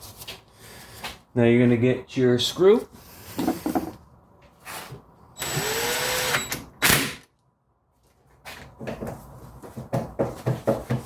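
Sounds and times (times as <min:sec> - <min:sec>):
cordless drill whining: 0:05.4 - 0:07.2.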